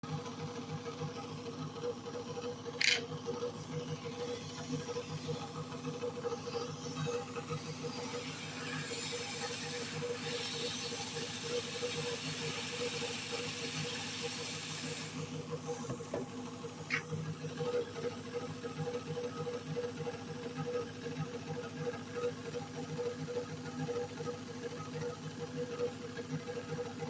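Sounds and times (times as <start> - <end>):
hiss: 8.1 - 15.2.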